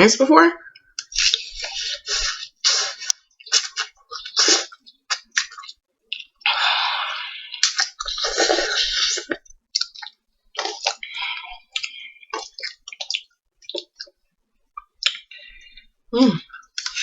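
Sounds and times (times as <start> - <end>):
wet chewing and mouth clicks: 0.7 - 17.0
person slurping noodles: 1.0 - 5.7, 6.4 - 9.5.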